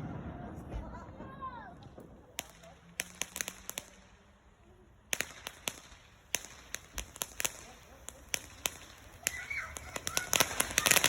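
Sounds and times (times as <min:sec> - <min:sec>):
firework crackling: 0:00.0 - 0:11.0
firework rumble: 0:00.0 - 0:11.0
firework whistle: 0:08.7 - 0:11.0.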